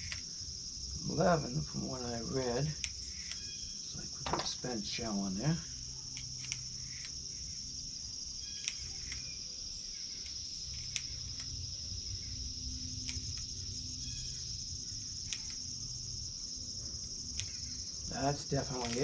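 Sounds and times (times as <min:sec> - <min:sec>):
small sharp clicks: 0:00.0 - 0:00.3, 0:02.8 - 0:03.5, 0:06.1 - 0:07.2, 0:08.5 - 0:09.4, 0:10.1 - 0:11.6, 0:13.0 - 0:13.6, 0:15.2 - 0:15.8, 0:17.3 - 0:17.7, 0:18.7 - 0:19.0
crickets chirping: 0:00.0 - 0:19.0.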